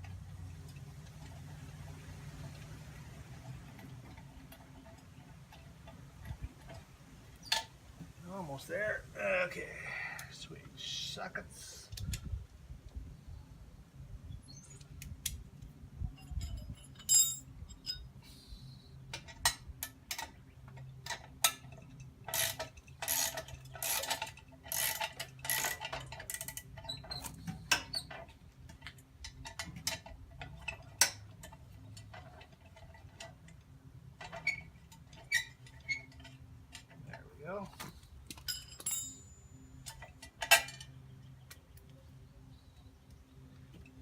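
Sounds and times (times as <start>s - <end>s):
tool clinking on metal: 16.2s - 18.0s, 38.3s - 40.9s.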